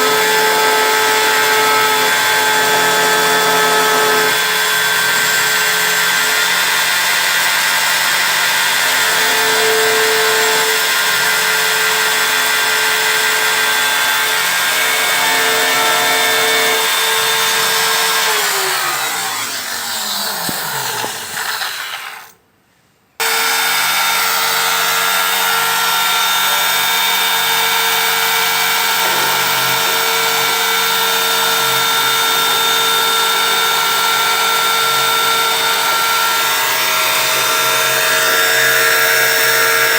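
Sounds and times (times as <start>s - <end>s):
engraving machine motor whine: 0.0s - 22.3s.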